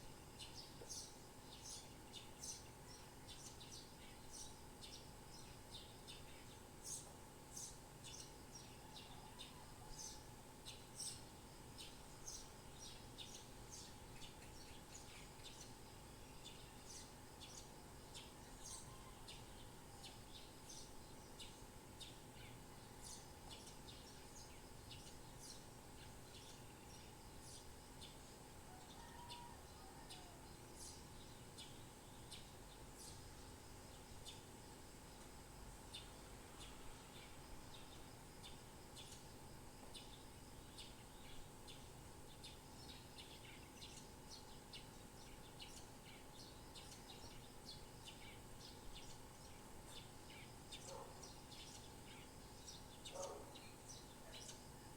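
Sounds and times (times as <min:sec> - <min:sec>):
steady background hiss: 0:00.0 - 0:54.9
birds chirping: 0:35.9 - 0:54.9.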